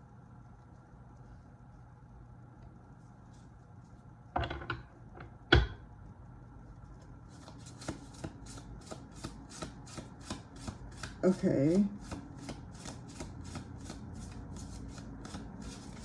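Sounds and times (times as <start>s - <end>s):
deck of cards shuffling: 7.3s - 11.4s, 12.0s - 16.0s.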